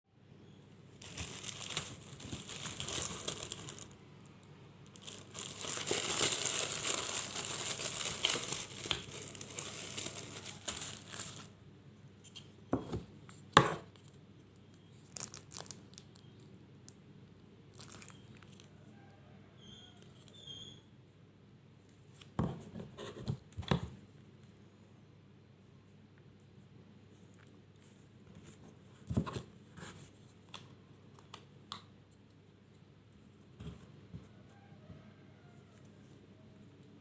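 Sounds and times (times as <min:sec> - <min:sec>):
plastic packaging crinkling and tearing: 0:01.0 - 0:11.6, 0:14.8 - 0:16.5, 0:17.7 - 0:18.7.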